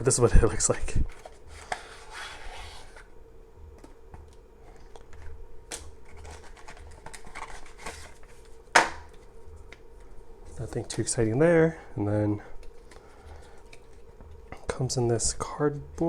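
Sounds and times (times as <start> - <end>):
packaging rustling and scratching: 1.0 - 3.1, 4.7 - 11.3.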